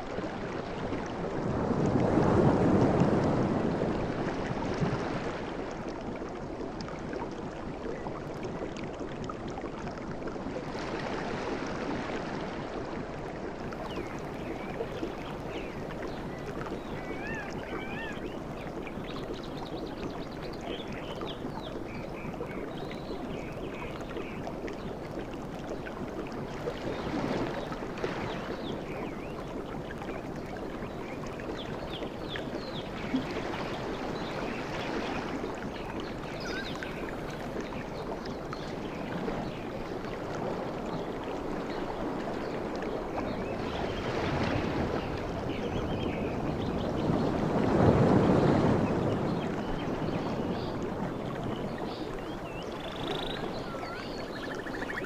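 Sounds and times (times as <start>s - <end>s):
sea waves washing onto beach: 0.0s - 7.8s, 8.7s - 55.0s
faint high wavering calls: 17.0s - 18.3s, 52.8s - 55.0s.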